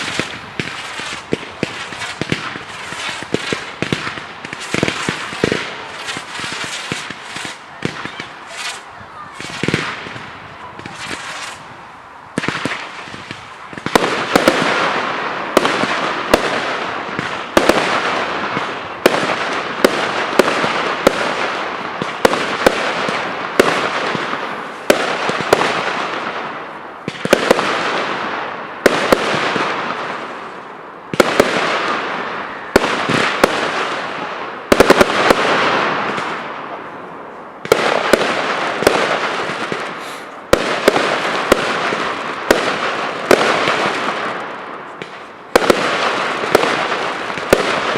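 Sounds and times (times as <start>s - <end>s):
firework shells bursting: 0.0s - 11.7s, 37.7s - 47.9s.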